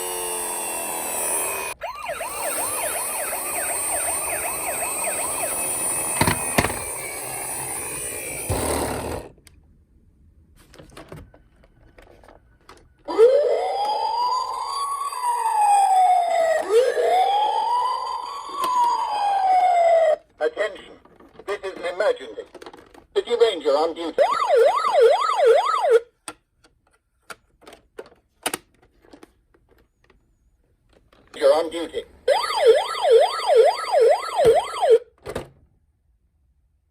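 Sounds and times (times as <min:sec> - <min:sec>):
fast warbling toy siren: 0:00.0 - 0:09.2, 0:13.0 - 0:20.2, 0:24.2 - 0:26.1, 0:32.3 - 0:35.1
slow wailing toy siren: 0:00.0 - 0:09.3, 0:13.0 - 0:20.3, 0:24.2 - 0:26.1, 0:32.3 - 0:35.1.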